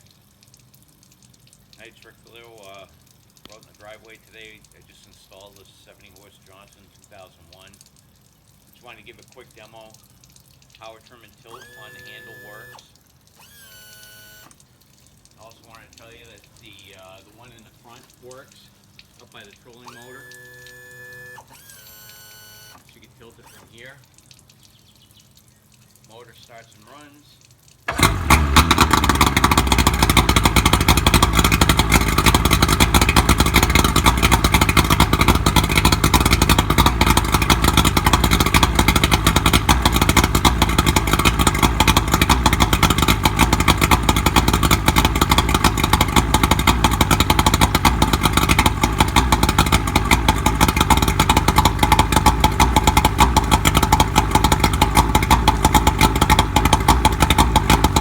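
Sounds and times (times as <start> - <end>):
outboard motor running: 11.4 - 14.6, 19.7 - 23.9, 27.9 - 58.0.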